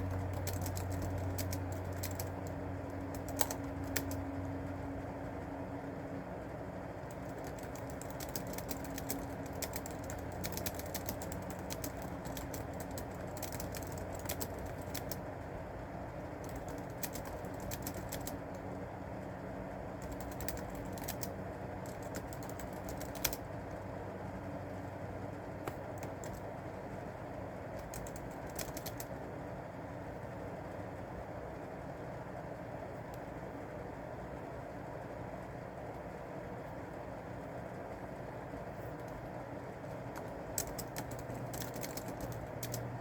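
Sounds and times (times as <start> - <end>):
typing on a keyboard: 0.0 - 4.5, 7.1 - 15.2, 16.4 - 18.6, 20.0 - 23.5, 25.6 - 26.5, 27.7 - 29.2, 40.1 - 43.0
steady background hum: 0.0 - 43.0.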